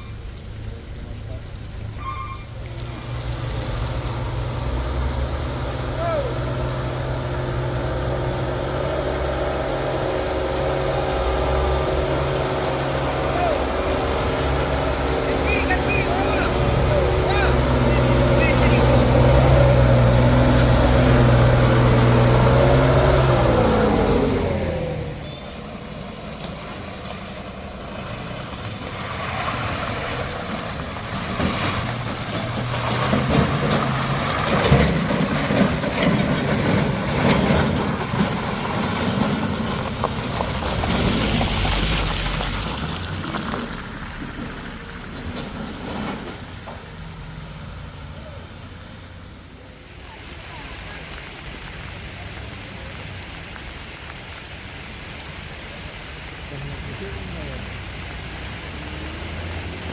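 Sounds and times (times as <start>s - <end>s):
diesel truck engine labouring: 0.0s - 59.9s
road rumble: 0.0s - 59.9s
high squeals and hisses: 26.6s - 27.6s, 28.8s - 33.3s.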